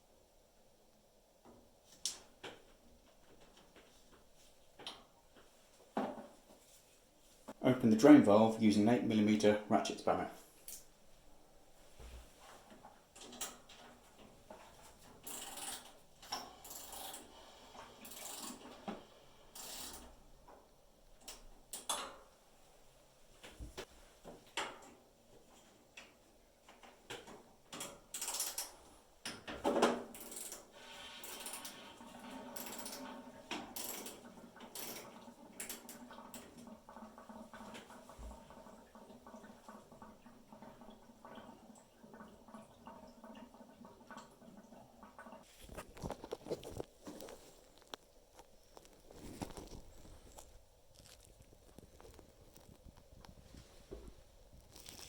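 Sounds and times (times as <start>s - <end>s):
water draining into bucket: 29.3s - 46.8s.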